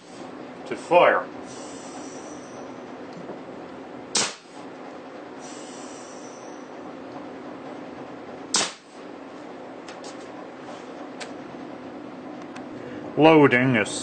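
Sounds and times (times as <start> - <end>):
air rifle shots: 4.1 - 4.6, 8.5 - 9.0.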